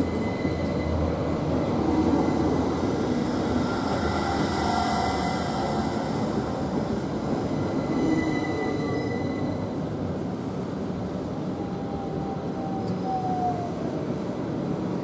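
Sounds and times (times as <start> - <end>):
train rumbling: 0.0 - 15.0
wheels and brakes squealing: 7.4 - 9.8.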